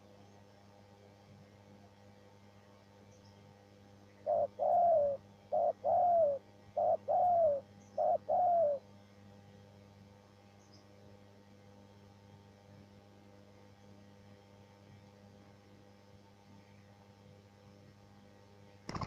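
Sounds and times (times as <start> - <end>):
dove cooing: 4.2 - 8.9.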